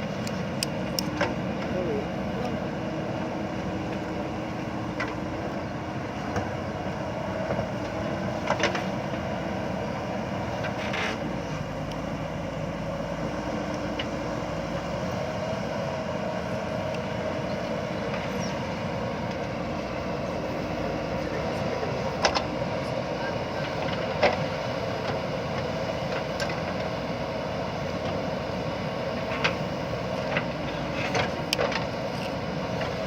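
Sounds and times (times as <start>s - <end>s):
diesel engine running: 0.0s - 33.0s.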